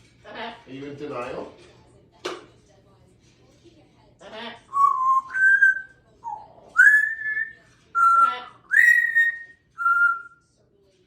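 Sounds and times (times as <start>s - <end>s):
parrot whistling notes: 4.8s - 10.4s.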